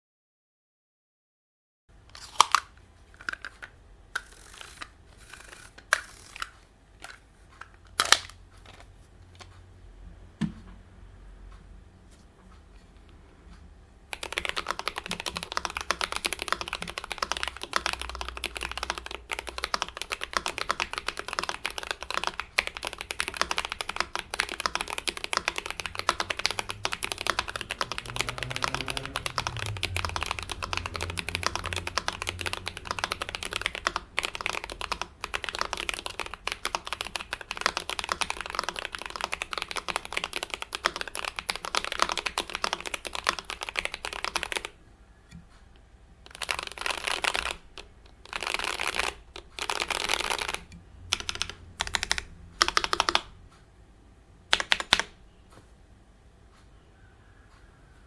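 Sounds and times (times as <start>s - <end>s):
typing on mechanical keyboard: 2.2s - 9.5s, 14.1s - 45.4s, 46.2s - 53.3s, 54.5s - 55.2s.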